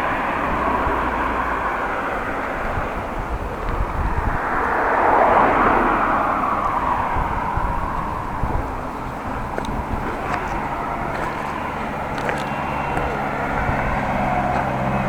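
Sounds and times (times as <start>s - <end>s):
road traffic passing: 0.0s - 15.0s
wind rumbling on microphone: 0.0s - 15.0s.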